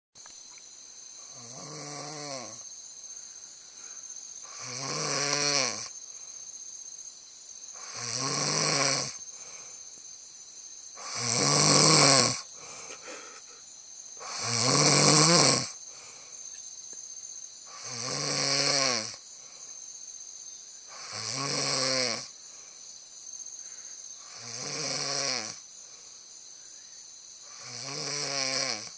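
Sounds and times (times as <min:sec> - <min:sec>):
person snoring: 0:01.3 - 0:02.6, 0:04.4 - 0:05.9, 0:07.8 - 0:09.7, 0:11.0 - 0:13.6, 0:14.2 - 0:16.2, 0:17.7 - 0:19.2, 0:20.9 - 0:22.3, 0:24.2 - 0:25.6, 0:27.5 - 0:28.9.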